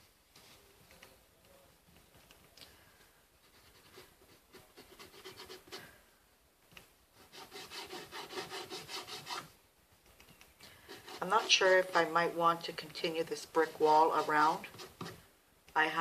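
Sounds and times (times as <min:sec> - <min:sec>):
paint scratching on cardboard: 0:03.4 - 0:05.9, 0:07.2 - 0:09.5, 0:10.8 - 0:12.2, 0:13.0 - 0:15.2.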